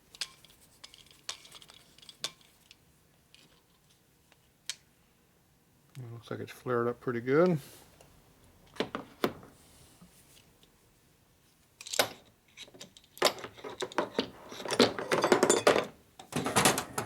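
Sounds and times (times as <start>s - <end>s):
metal tool clanks and rattles: 13.2s - 17.0s.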